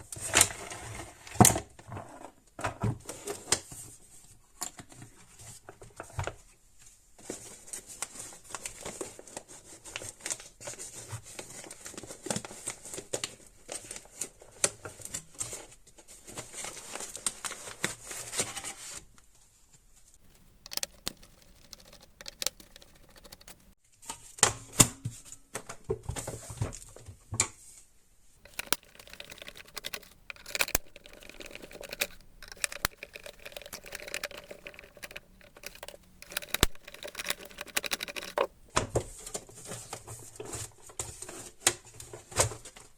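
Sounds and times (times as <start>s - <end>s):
plastic clicks and taps: 20.2s - 23.7s, 28.5s - 38.6s
rubbing or scraping plastic: 20.2s - 23.8s, 28.4s - 38.7s.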